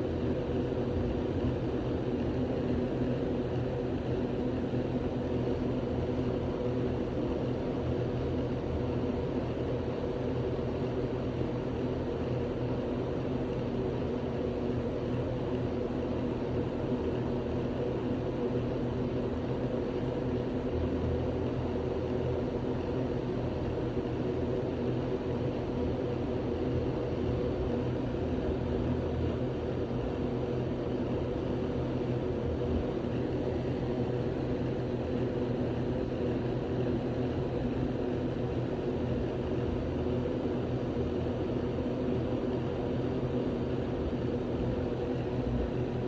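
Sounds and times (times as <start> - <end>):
steady mechanical drone: 0.0 - 46.0.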